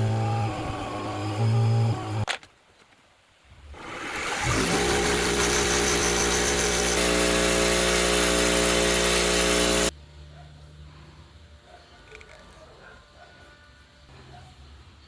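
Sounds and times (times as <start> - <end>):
lathe electric motor running: 3.8 - 9.9.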